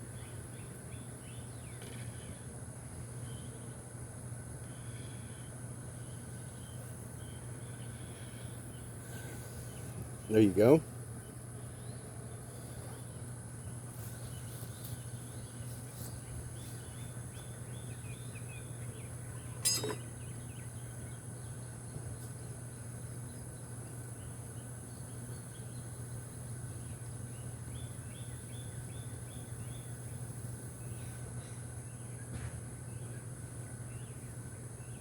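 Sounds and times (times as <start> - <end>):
honeybees humming: 0.0 - 34.9
birds chirping: 4.9 - 30.2.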